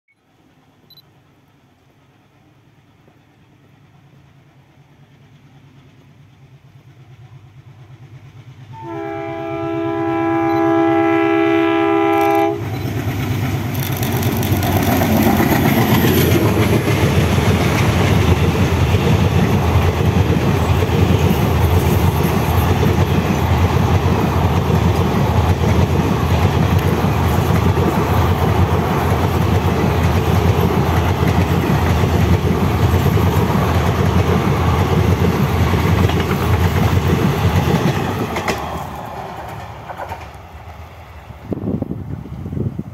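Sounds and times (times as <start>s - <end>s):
diesel locomotive engine rumble: 0.4s - 42.9s
train horn: 8.7s - 12.8s.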